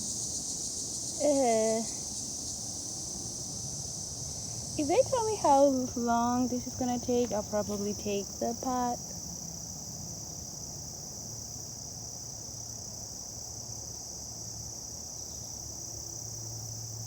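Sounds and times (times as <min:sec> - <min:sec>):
high-pitched insect chorus: 0:00.0 - 0:17.0
distant road traffic hum: 0:02.7 - 0:09.7.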